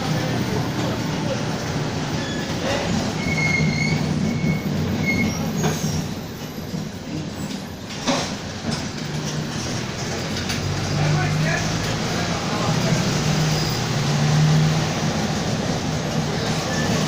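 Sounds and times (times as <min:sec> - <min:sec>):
bus body rattles: 0:00.0 - 0:17.0
bus engine droning: 0:00.0 - 0:17.0
short high squeals: 0:02.2 - 0:06.2.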